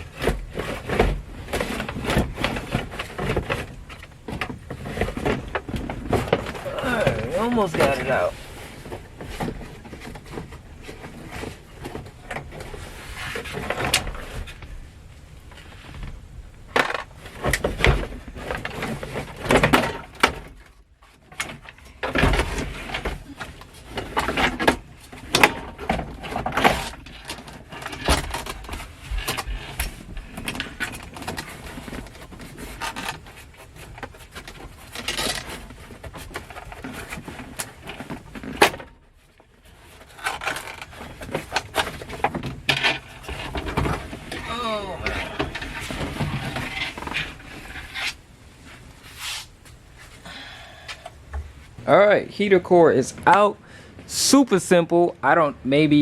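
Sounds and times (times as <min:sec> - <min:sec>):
knocks clunks and scraping: 0:00.0 - 0:56.0.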